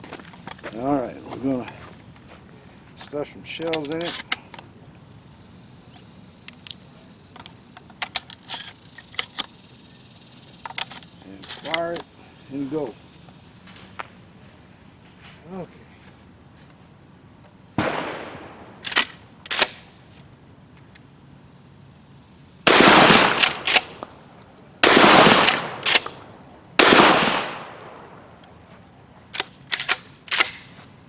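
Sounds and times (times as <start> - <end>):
shotgun blasts: 17.8 - 19.0, 22.6 - 24.0, 24.8 - 28.2
shotgun action clicking: 17.8 - 19.8, 22.7 - 28.5, 29.3 - 30.7.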